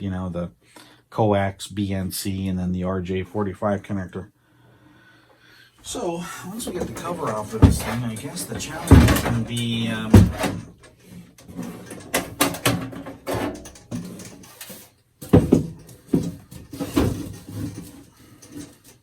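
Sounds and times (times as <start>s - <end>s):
metal case knocks and scrapes: 6.6s - 10.8s, 11.4s - 19.0s.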